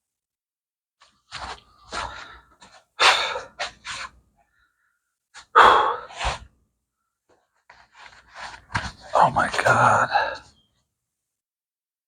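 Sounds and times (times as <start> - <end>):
man sighing heavily: 5.6 - 6.1.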